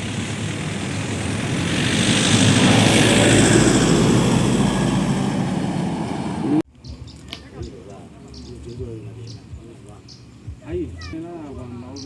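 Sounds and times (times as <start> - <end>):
motor vehicle passing: 0.0 - 12.0.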